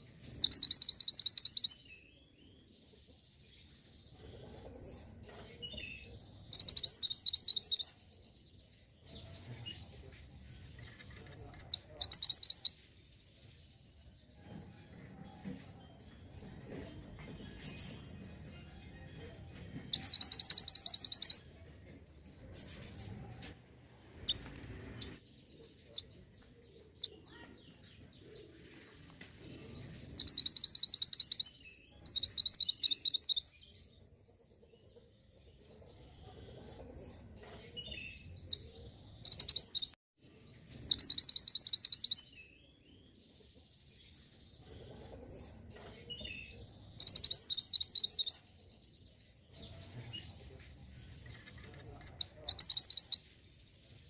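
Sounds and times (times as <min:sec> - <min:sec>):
bird high chattering song: 0:00.0 - 0:02.4, 0:05.5 - 0:08.1, 0:10.7 - 0:13.6, 0:19.9 - 0:21.5, 0:29.6 - 0:33.7, 0:37.8 - 0:40.0, 0:40.7 - 0:42.8, 0:45.6 - 0:48.6, 0:51.1 - 0:54.0.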